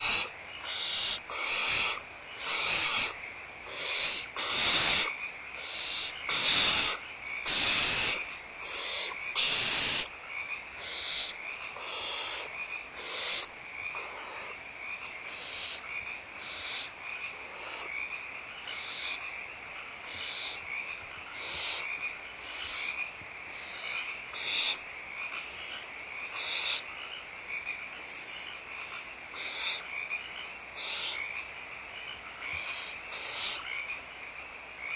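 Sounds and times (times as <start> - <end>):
owl chicks hissing calls: 0.0 - 10.1, 10.8 - 14.6, 15.2 - 18.0, 18.6 - 19.2, 20.0 - 20.7, 21.3 - 26.9, 28.0 - 28.6, 29.3 - 29.9, 30.7 - 31.3, 32.4 - 33.7.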